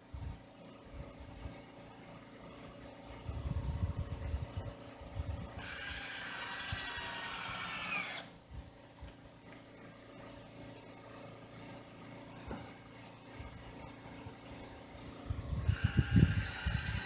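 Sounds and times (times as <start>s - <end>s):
power drill whining: 5.6s - 8.3s, 15.7s - 17.0s.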